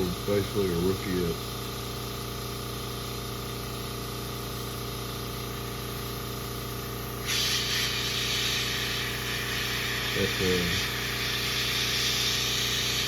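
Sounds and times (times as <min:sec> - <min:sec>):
compressor humming: 0:00.0 - 0:13.0
airbrush spraying hiss: 0:07.2 - 0:13.0.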